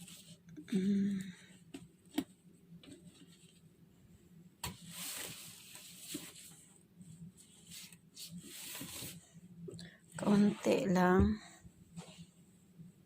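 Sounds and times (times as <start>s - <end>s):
fabric rustling: 4.8s - 9.4s.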